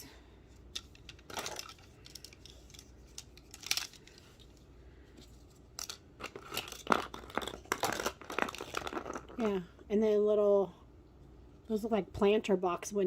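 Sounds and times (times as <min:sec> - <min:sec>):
packaging rustling and crinkling: 0:05.3 - 0:09.6.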